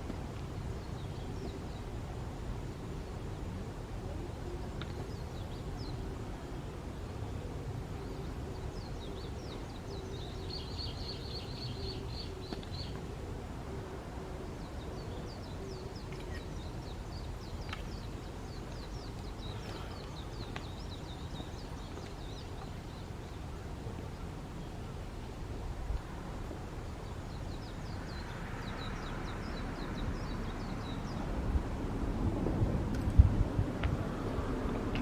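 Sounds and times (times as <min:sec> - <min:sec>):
steady low rumble: 0:00.0 - 0:35.0
small bird chirping: 0:14.8 - 0:23.4.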